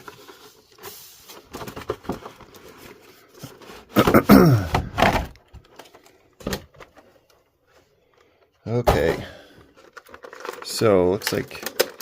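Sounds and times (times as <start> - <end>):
packaging knocks and clicks: 8.7 - 12.0
packaging rubbing and creaking: 9.7 - 12.0.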